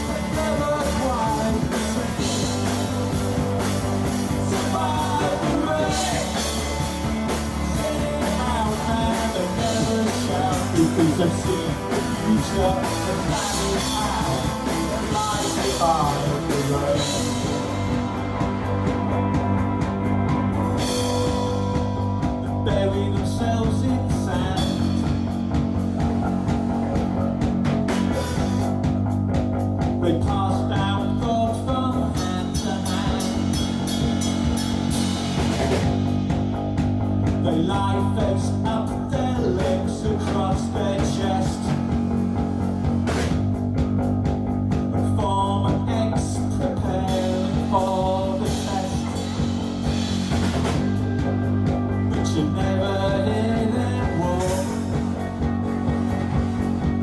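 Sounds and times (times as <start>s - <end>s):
low accompaniment: 1.5s - 30.0s
guitar melody with pitch bends: 1.6s - 22.8s.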